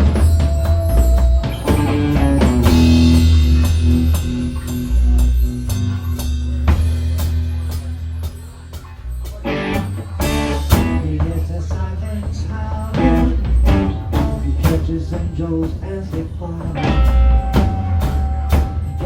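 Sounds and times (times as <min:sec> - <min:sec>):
drum kit hits: 0:00.0 - 0:08.5, 0:09.3 - 0:11.3, 0:13.0 - 0:15.3
bass line: 0:00.0 - 0:19.0.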